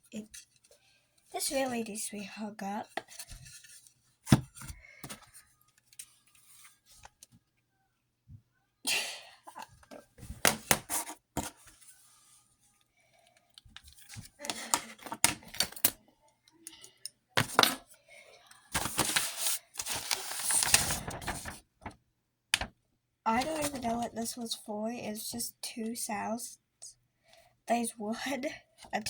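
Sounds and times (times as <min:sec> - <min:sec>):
rustling and scraping: 0:02.8 - 0:07.3, 0:17.4 - 0:17.8, 0:18.7 - 0:21.6.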